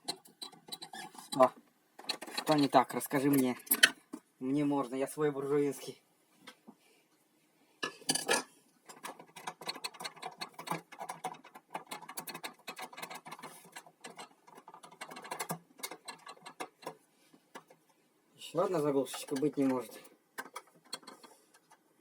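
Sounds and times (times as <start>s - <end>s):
clicking of sewing machine parts: 8.1s - 17.8s, 19.1s - 21.9s.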